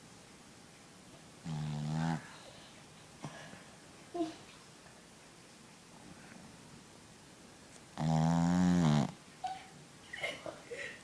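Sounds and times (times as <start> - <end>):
puppy snoring: 1.4 - 2.4, 7.9 - 9.2.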